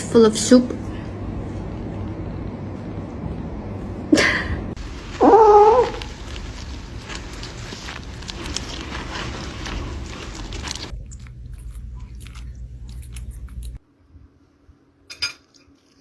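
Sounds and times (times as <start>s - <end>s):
kittens chewing and smacking: 4.8s - 13.8s.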